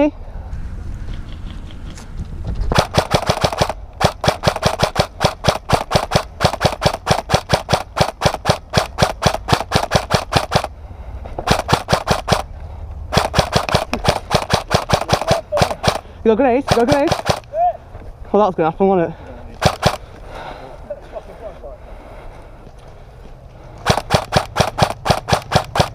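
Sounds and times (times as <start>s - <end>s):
airsoft gun rapid firing: 2.7s - 10.7s, 11.5s - 12.5s, 13.1s - 17.4s, 19.6s - 20.1s, 23.8s - 25.9s.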